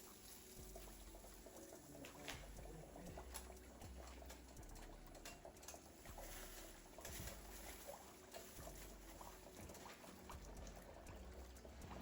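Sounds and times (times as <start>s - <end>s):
fish frying in grease: 0.0s - 12.0s.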